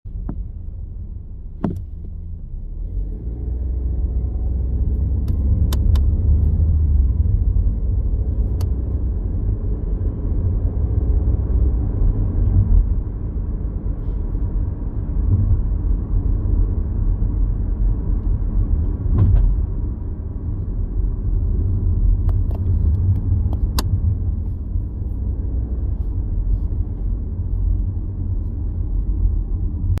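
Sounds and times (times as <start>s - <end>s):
low rumble of car driving: 0.0s - 30.0s
car seat clicking: 1.6s - 2.2s.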